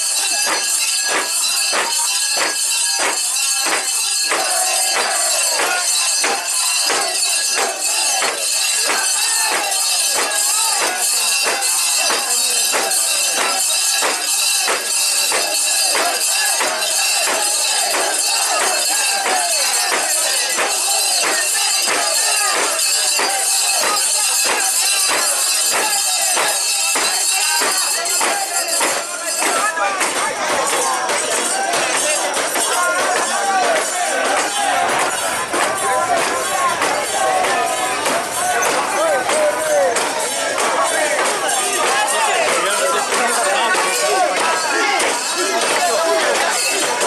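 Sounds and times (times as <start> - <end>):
crowd chanting: 0.0 - 47.0.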